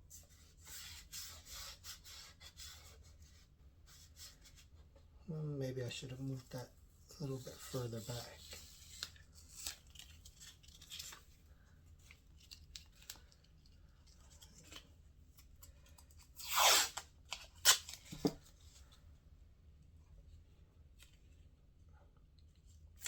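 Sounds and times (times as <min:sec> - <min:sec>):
tape ripping off: 0:16.4 - 0:18.4.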